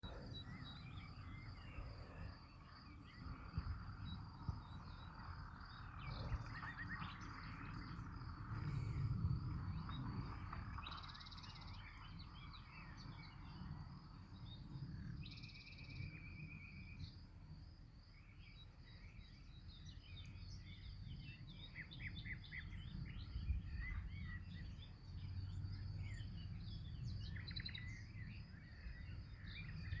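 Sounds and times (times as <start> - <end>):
birds chirping: 0.0 - 9.1.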